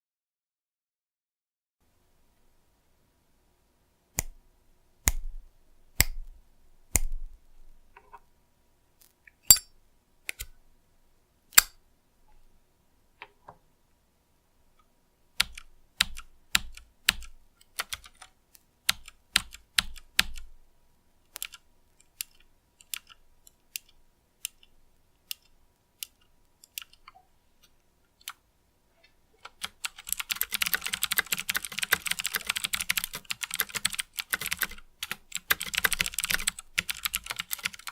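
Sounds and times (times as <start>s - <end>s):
rapid keyboard typing: 15.4s - 18.3s, 18.9s - 20.5s, 21.4s - 21.6s, 22.2s - 23.2s, 29.4s - 37.9s
keyboard keystroke clicks: 21.3s - 24.7s, 29.4s - 37.9s.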